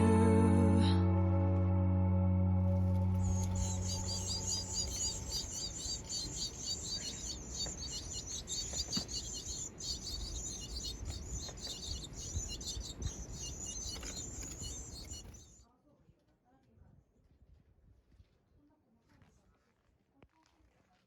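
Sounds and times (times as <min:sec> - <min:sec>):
songbirds chirping: 0:02.6 - 0:15.6
high thin bird chatter: 0:03.1 - 0:15.6.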